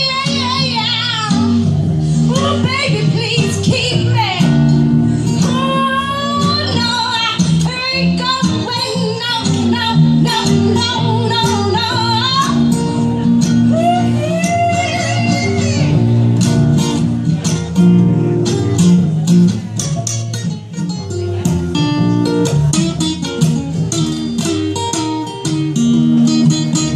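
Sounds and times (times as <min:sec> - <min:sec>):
acoustic guitar: 0:00.0 - 0:26.9
double bass: 0:00.0 - 0:26.9
quick plucked guitar notes: 0:00.0 - 0:26.9.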